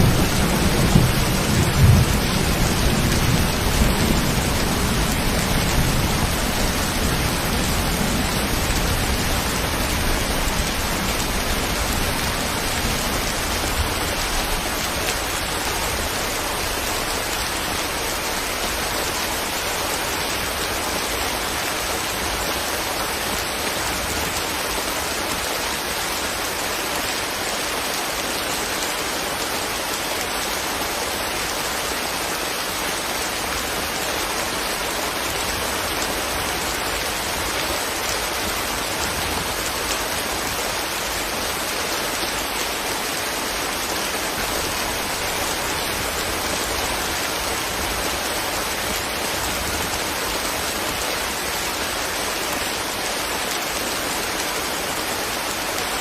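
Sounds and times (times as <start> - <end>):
low thunder rumble: 0.0 - 14.6
steady rain falling: 0.0 - 56.0.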